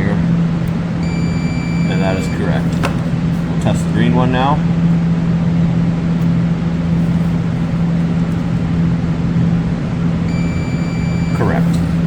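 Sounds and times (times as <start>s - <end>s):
low hum: 0.0s - 12.0s
continuity tester high beep: 1.0s - 2.6s, 10.2s - 11.8s.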